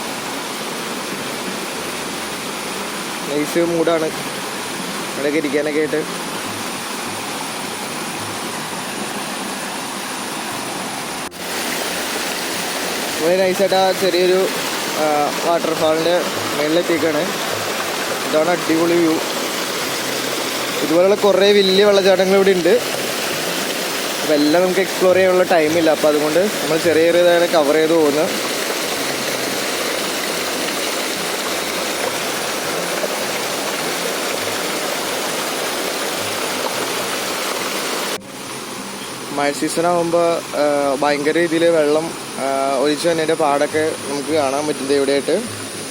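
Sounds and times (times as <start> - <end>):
waterfall rushing: 0.0 - 45.9.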